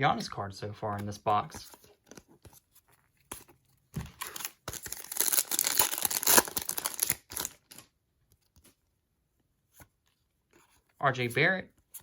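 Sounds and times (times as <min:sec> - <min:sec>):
foil wrapper tearing and crinkling: 0:04.2 - 0:07.8.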